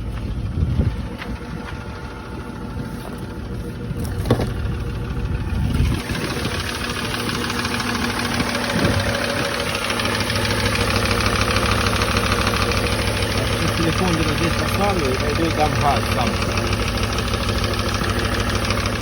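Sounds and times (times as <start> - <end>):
car engine idling: 0.0 - 19.0
fast ticking engine clatter: 0.0 - 19.0.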